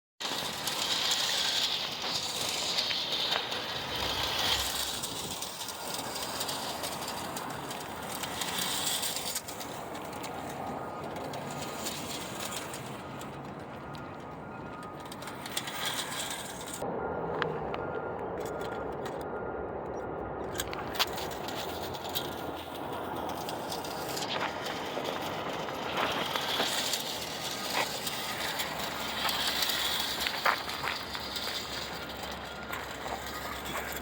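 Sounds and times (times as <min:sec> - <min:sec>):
clockwork toy train whirring: 0:00.2 - 0:16.9, 0:18.4 - 0:19.3, 0:20.4 - 0:34.0.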